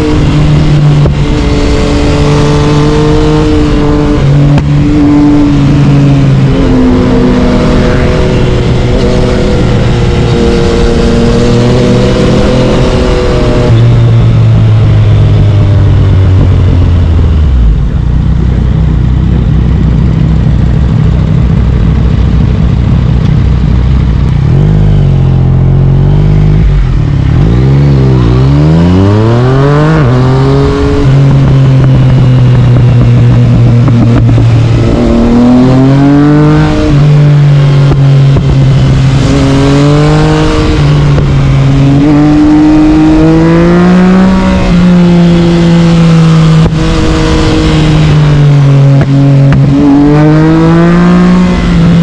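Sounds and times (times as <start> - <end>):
motorcycle engine accelerating: 0.0 - 52.0.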